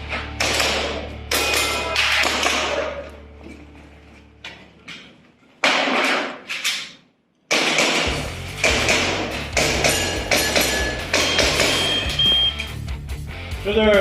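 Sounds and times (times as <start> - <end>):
airsoft pistol shots: 7.5 - 12.1.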